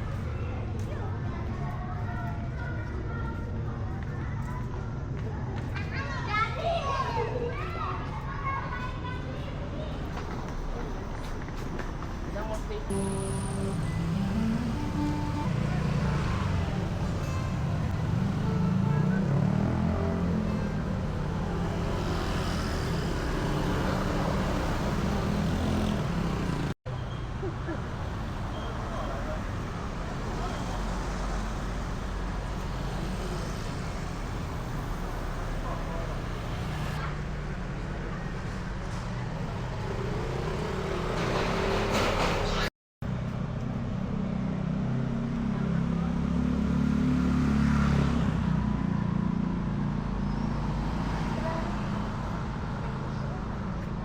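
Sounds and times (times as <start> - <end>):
street traffic engine rumble: 0.0 - 54.0
vehicle engine passing: 12.9 - 17.2, 17.8 - 26.8, 44.6 - 53.1.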